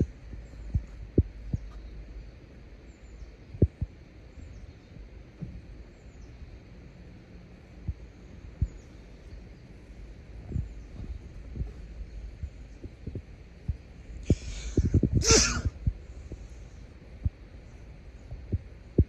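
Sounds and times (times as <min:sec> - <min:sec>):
low rumble: 0:07.9 - 0:19.0.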